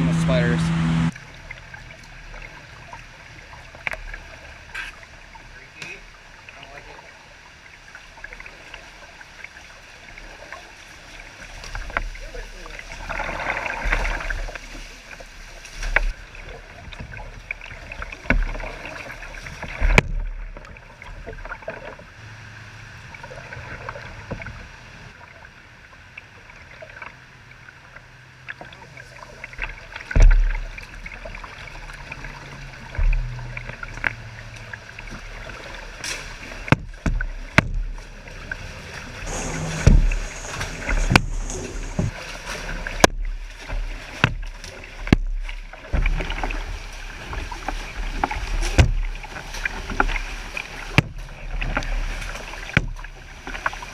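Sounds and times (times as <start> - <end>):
paddle splashes and drips: 1.1 - 53.9
paddle knocking: 36.1 - 38.2, 39.2 - 53.8.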